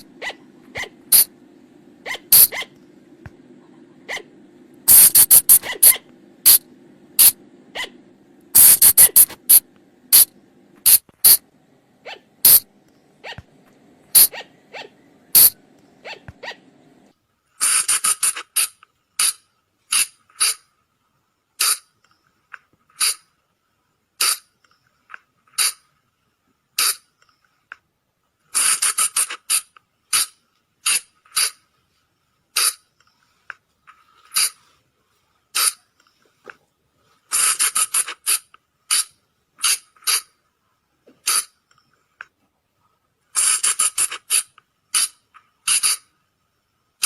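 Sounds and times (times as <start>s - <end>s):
colugo sharp squeaks: 0.0s - 1.3s, 2.0s - 2.8s, 4.9s - 6.6s, 14.2s - 16.7s.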